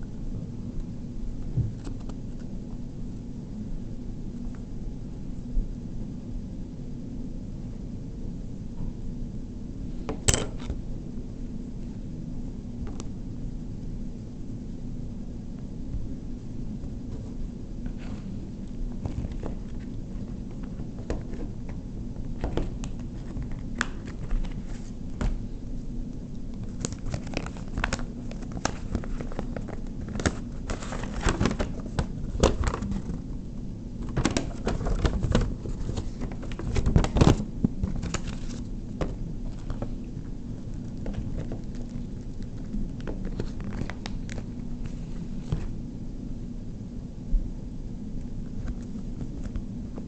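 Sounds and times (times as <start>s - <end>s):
steady low hum: 0.0s - 50.0s
packaging crinkling: 26.6s - 33.3s, 34.0s - 44.6s.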